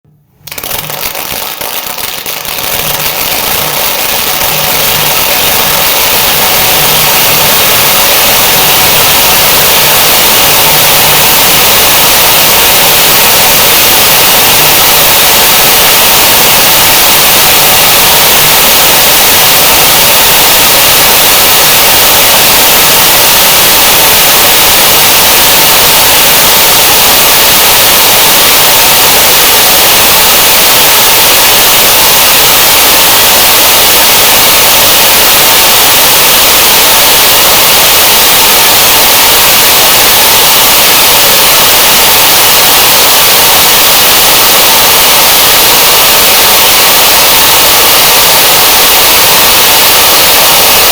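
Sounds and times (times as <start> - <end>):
audience applause: 0.5 - 6.5.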